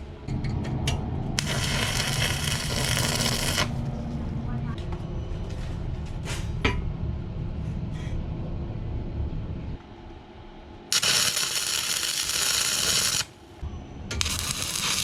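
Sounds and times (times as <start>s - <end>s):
low rumble: 0.0s - 10.9s
grinder grinding steel: 1.4s - 3.7s, 10.9s - 13.3s, 14.2s - 15.0s.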